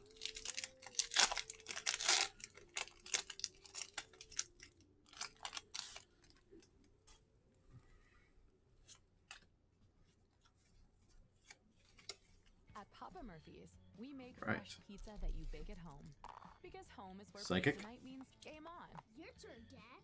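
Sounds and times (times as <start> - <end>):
foil wrapper tearing and crinkling: 0.0 - 6.7.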